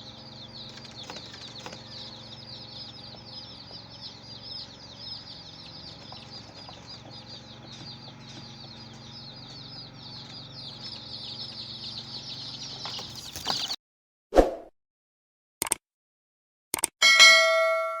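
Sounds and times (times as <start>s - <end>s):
baby chicks peeping: 0.0s - 13.8s.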